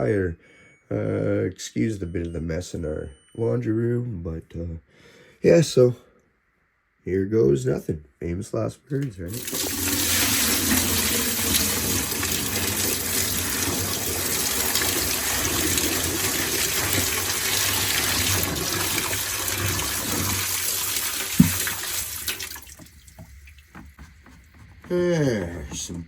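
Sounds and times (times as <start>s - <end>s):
water pouring into washing machine: 9.3s - 26.0s.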